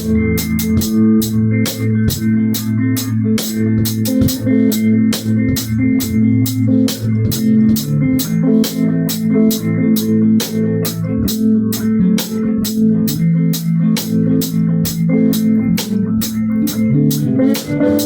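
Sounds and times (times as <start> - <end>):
drum beat with cymbal strokes: 0.0 - 18.0
band playing: 14.2 - 18.0.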